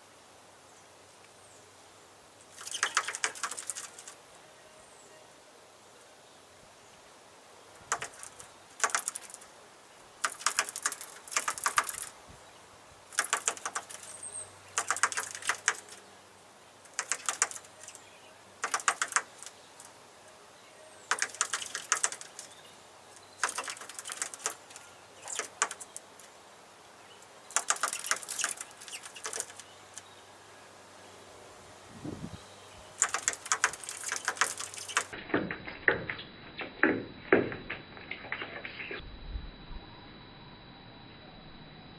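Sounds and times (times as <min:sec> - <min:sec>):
bird pecking on metal grille: 0:02.6 - 0:04.1, 0:07.8 - 0:09.5, 0:10.2 - 0:12.1, 0:13.1 - 0:14.2, 0:14.8 - 0:16.0, 0:16.9 - 0:18.0, 0:18.6 - 0:19.6, 0:21.1 - 0:22.6, 0:23.2 - 0:26.1, 0:27.5 - 0:29.7, 0:33.0 - 0:36.2.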